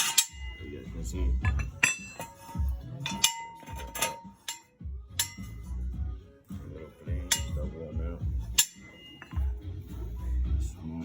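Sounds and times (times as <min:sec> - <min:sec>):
metal tools clinking: 0:00.0 - 0:05.7, 0:07.2 - 0:07.7, 0:08.5 - 0:09.6
sharp ringing metal strikes: 0:00.0 - 0:05.8, 0:07.2 - 0:07.8, 0:08.4 - 0:09.6
dull low thumps: 0:07.1 - 0:08.6.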